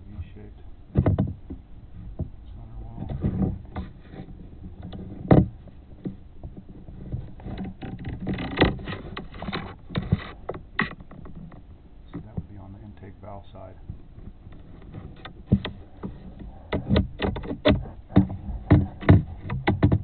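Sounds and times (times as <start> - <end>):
probe cable scraping and rustling: 0.0 - 20.0
sharp knocks: 13.8 - 20.0.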